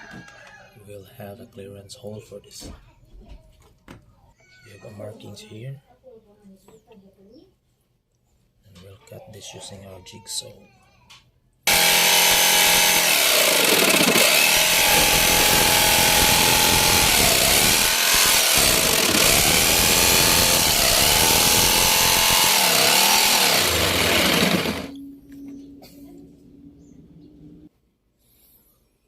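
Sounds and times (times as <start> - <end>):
electric jigsaw cutting: 11.7 - 24.9.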